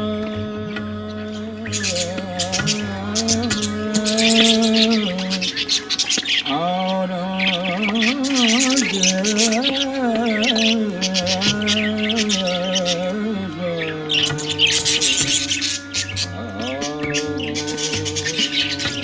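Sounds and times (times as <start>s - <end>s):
birds chirping and squawking: 0.0s - 19.0s
person singing long held notes: 0.0s - 19.0s.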